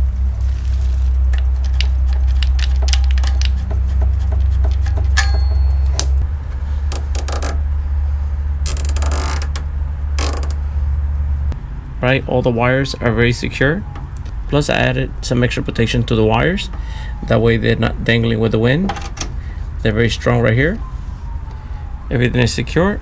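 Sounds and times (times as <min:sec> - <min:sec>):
rustling: 0:00.0 - 0:05.2
vacuum pump humming: 0:00.0 - 0:10.7
small metal parts clicking: 0:06.9 - 0:07.6.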